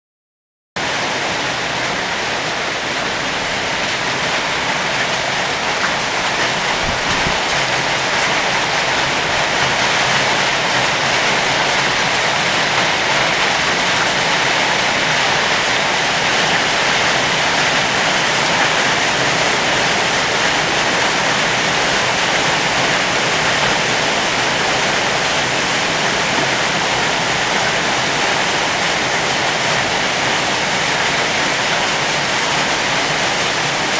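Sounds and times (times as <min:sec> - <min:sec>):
heavy rain pouring: 0:00.8 - 0:33.9.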